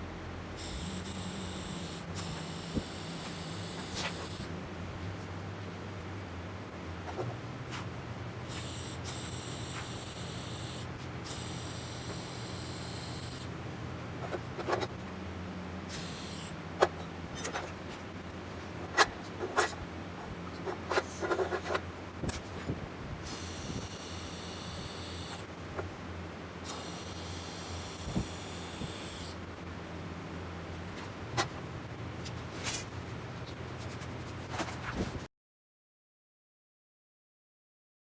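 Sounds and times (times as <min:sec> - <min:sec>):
steady low hum: 0:00.0 - 0:35.2
welding arc hissing: 0:00.6 - 0:04.5, 0:08.5 - 0:13.5, 0:15.9 - 0:16.5, 0:23.3 - 0:25.4, 0:26.7 - 0:29.4.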